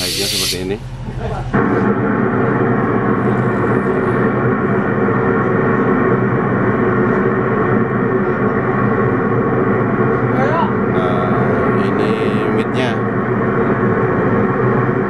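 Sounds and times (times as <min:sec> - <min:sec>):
test noise through loudspeaker: 0:00.0 - 0:00.8, 0:10.4 - 0:13.2.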